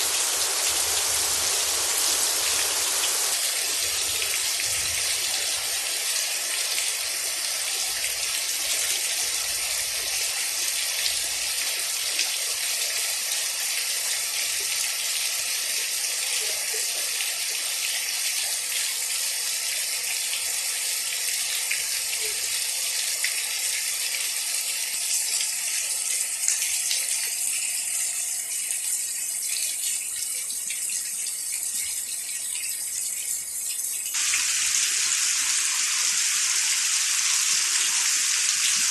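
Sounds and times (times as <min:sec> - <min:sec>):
heavy rain hissing: 0:00.0 - 0:05.1, 0:34.2 - 0:38.9.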